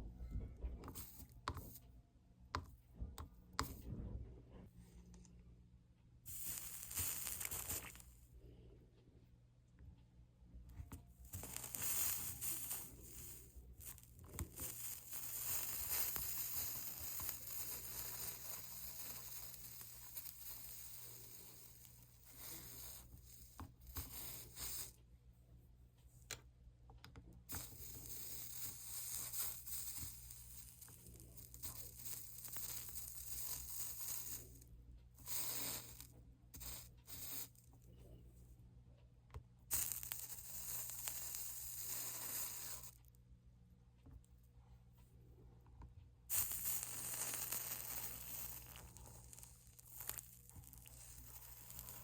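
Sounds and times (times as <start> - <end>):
flux sizzling under soldering iron: 0.6 - 1.9, 3.6 - 4.0, 6.2 - 8.2, 10.7 - 25.1, 27.4 - 37.8, 39.6 - 43.2, 46.2 - 52.0.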